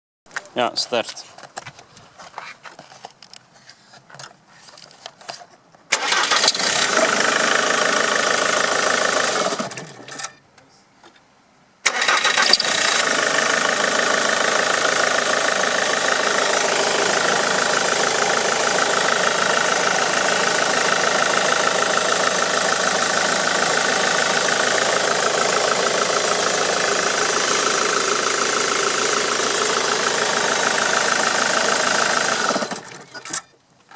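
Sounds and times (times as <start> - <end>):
diesel engine starting and idling: 5.9 - 10.3, 11.8 - 33.5
engine chirping: 11.9 - 33.6.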